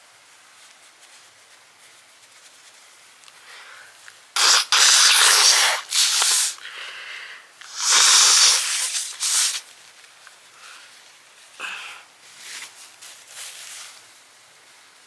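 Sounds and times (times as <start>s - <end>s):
woman blowing her nose: 4.4s - 6.9s, 7.6s - 9.7s.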